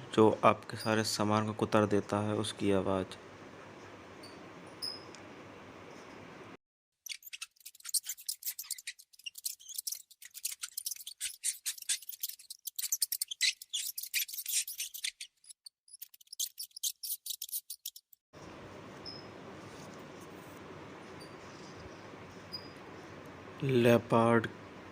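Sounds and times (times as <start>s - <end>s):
rodent squeaking: 7.0s - 18.2s, 22.5s - 22.8s.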